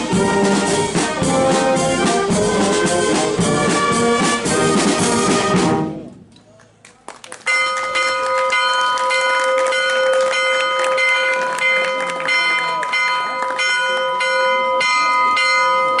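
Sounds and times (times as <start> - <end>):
church bells ringing: 7.5 - 16.0.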